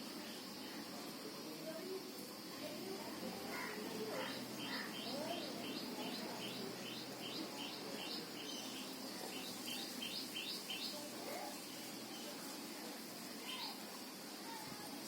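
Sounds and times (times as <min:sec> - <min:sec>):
small bird chirping: 0:04.2 - 0:12.3.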